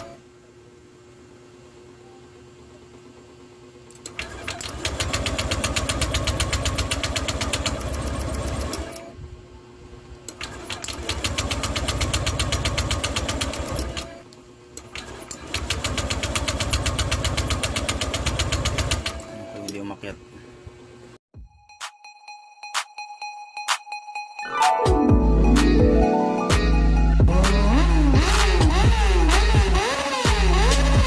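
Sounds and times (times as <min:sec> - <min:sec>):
scooter electric starter cranking: 0:04.0 - 0:09.0, 0:10.3 - 0:14.2, 0:14.8 - 0:19.2, 0:28.2 - 0:31.0.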